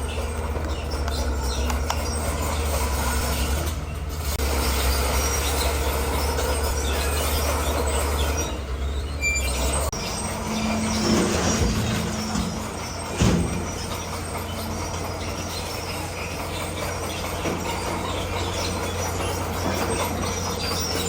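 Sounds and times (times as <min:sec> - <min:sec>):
bulldozer diesel engine humming: 0:00.0 - 0:21.0
machine grinding over stone: 0:09.9 - 0:21.0.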